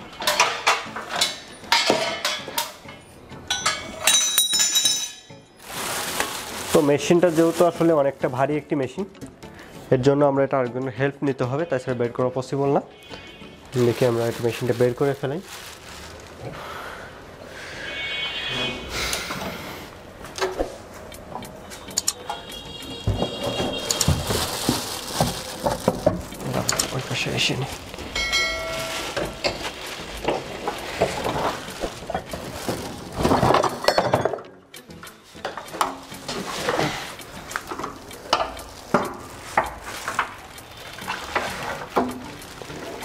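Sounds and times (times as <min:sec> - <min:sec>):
metal clinks and knocks: 0:00.2 - 0:05.4, 0:28.0 - 0:31.4
high ringing metal clang: 0:03.5 - 0:05.4, 0:28.2 - 0:29.6.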